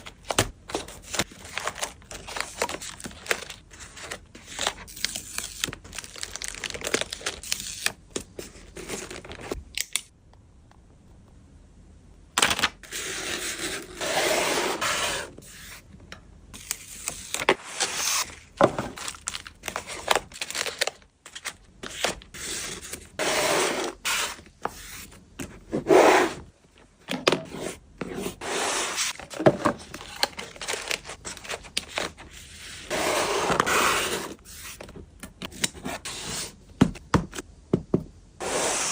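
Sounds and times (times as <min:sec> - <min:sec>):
plastic sleeves crinkling: 0:00.0 - 0:09.6.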